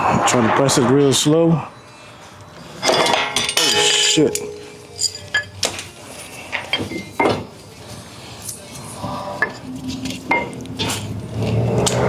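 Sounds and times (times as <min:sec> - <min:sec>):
metal clinks and knocks: 0:02.8 - 0:05.9.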